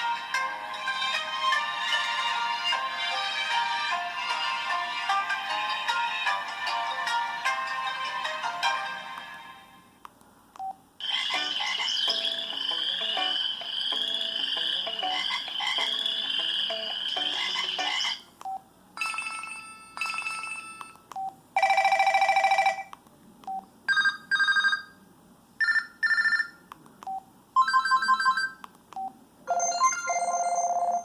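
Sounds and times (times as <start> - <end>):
warbling electronic tone: 11.0 - 18.2
electronic beep patterns: 11.0 - 18.6.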